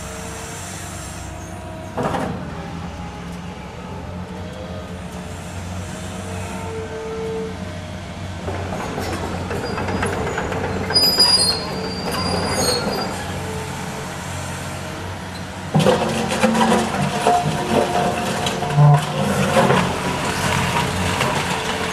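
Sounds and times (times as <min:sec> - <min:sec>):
high metallic squeals: 0:09.6 - 0:13.6
demolition machine engine running: 0:15.2 - 0:21.9.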